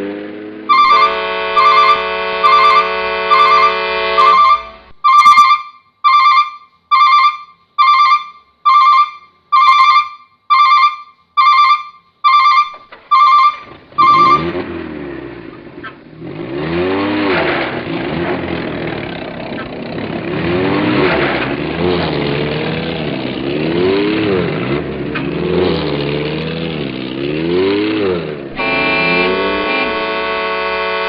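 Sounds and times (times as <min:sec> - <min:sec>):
engine revving: 0:00.0 - 0:04.9, 0:13.7 - 0:31.0
electronic beeps: 0:00.7 - 0:14.6.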